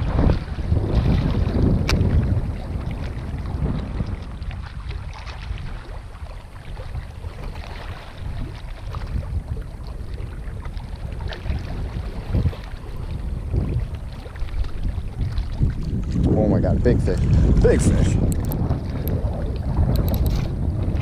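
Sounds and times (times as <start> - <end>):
wind buffeting microphone: 0.0 - 21.0
faint ticks: 18.3 - 19.2, 19.9 - 20.4.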